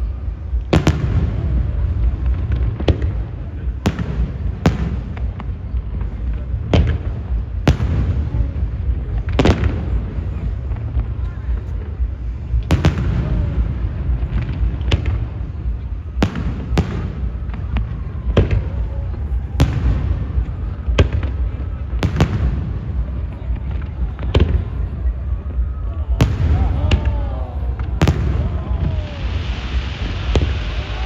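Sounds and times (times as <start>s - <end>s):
fireworks bangs: 0.0s - 31.0s
fireworks rumble: 0.0s - 31.0s.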